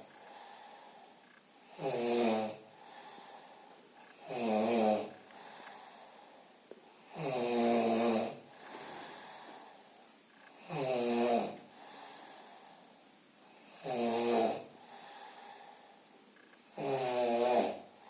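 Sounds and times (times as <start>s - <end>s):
quiet breathing: 0.0s - 18.0s
man snoring: 1.6s - 3.4s, 4.2s - 5.8s, 7.0s - 9.4s, 10.5s - 12.4s, 13.5s - 15.6s, 16.7s - 18.0s.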